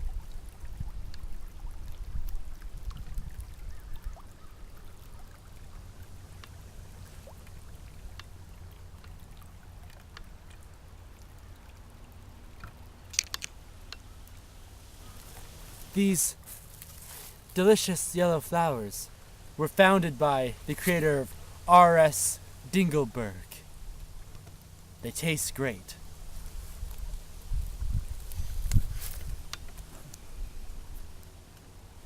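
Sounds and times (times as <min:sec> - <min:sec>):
low outdoor rumble: 0:04.7 - 0:32.0
small clicks and taps: 0:12.6 - 0:14.0
wind buffeting microphone: 0:26.3 - 0:31.1.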